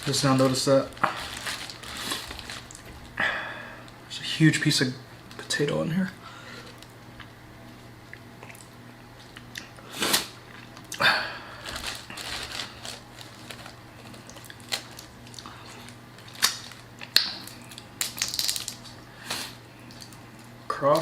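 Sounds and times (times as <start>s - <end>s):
crunching while eating: 0.0s - 3.2s, 8.1s - 21.0s
plastic bag rustling: 0.0s - 3.2s, 11.4s - 21.0s.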